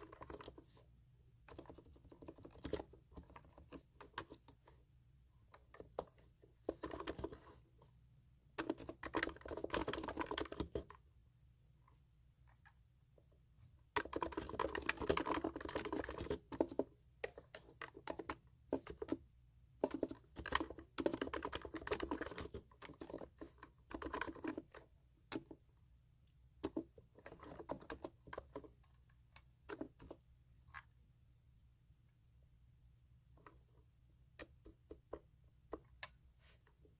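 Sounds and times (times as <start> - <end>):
computer keyboard typing: 0.0 - 0.6, 1.4 - 4.8, 5.5 - 7.5, 8.6 - 11.0, 14.0 - 19.2, 19.8 - 25.6, 26.6 - 30.9.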